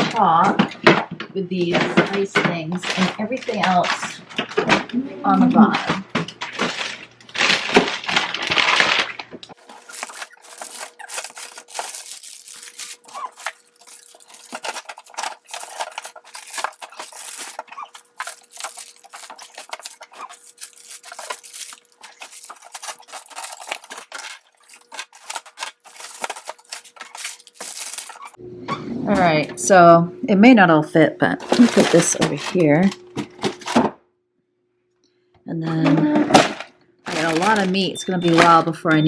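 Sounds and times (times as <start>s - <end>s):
food containers handled in fridge: 0.0s - 28.4s
plastic crinkles: 1.9s - 4.7s, 5.6s - 28.4s, 31.4s - 33.8s, 36.4s - 38.6s.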